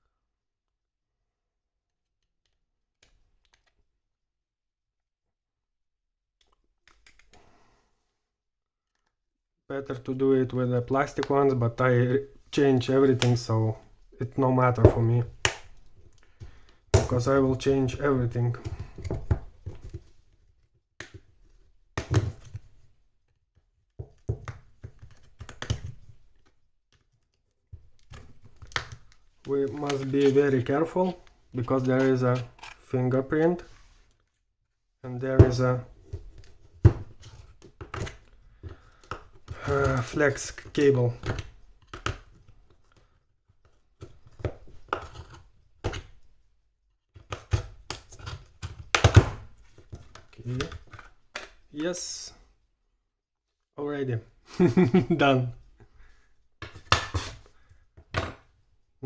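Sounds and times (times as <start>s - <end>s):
clicks of small tools and parts: 2.2s - 3.8s, 6.4s - 7.4s.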